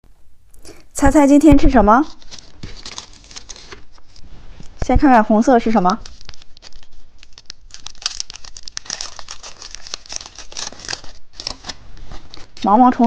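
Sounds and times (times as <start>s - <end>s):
candy wrapper crinkling: 2.0s - 4.8s, 5.6s - 12.7s.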